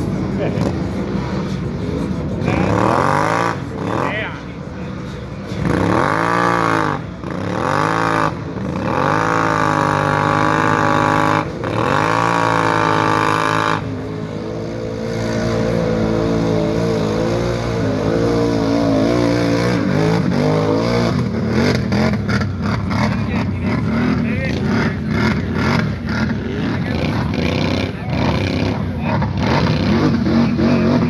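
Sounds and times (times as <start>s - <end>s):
atv engine revving: 0.0s - 31.0s.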